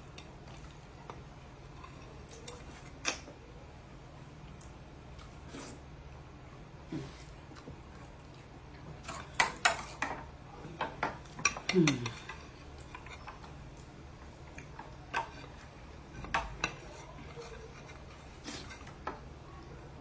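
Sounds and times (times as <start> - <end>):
cutlery scraping a plate: 16.2 - 19.1.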